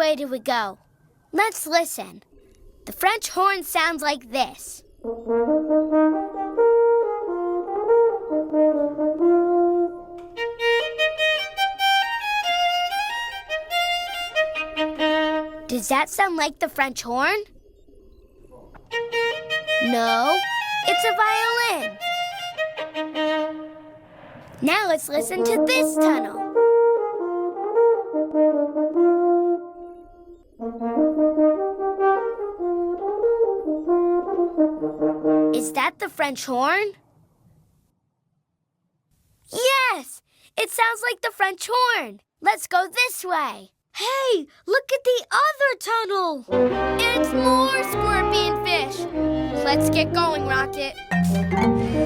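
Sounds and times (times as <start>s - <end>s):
french horn melody: 5.0s - 11.8s, 21.9s - 24.0s, 26.4s - 30.0s, 30.6s - 35.5s, 46.5s - 50.5s
violin melody: 9.7s - 15.7s, 18.9s - 23.9s, 46.5s - 52.0s.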